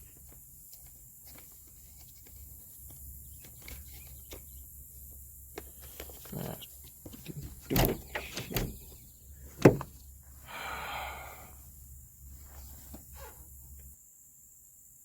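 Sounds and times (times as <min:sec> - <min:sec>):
scraping: 0:05.8 - 0:10.0.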